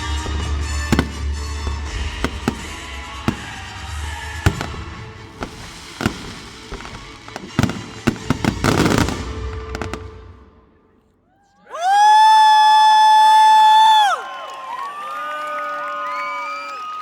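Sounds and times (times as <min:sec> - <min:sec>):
fireworks banging and crackling: 0:00.0 - 0:10.6.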